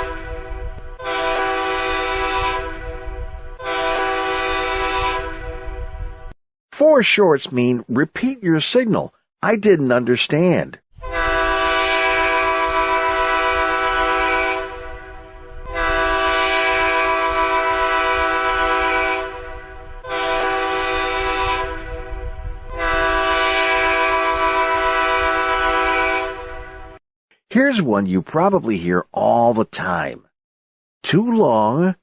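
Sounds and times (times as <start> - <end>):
train air horn blasts: 0.0 - 6.2, 11.0 - 27.0
train rumbling: 0.0 - 6.4, 11.1 - 27.0.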